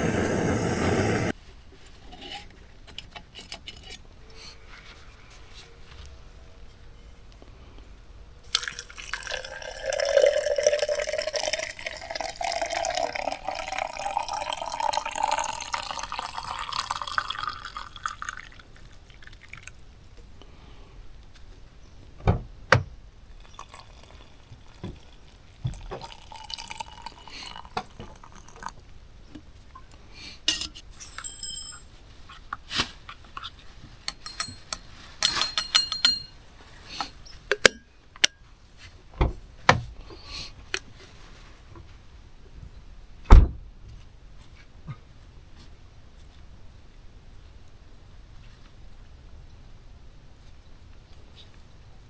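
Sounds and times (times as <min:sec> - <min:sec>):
water pouring into container: 0:08.5 - 0:19.8, 0:23.4 - 0:28.8
cookware knocking and clinking: 0:34.1 - 0:36.4.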